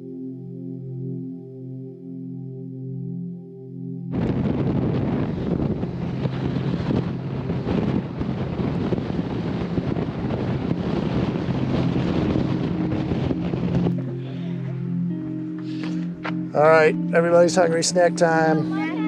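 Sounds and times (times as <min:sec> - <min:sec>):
strong wind buffeting microphone: 0:04.1 - 0:19.0
faint background music: 0:10.4 - 0:19.0.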